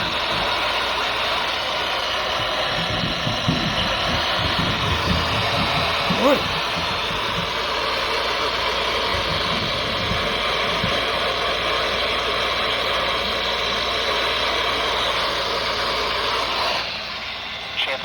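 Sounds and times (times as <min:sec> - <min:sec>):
radio static hiss: 0:17.8 - 0:18.0.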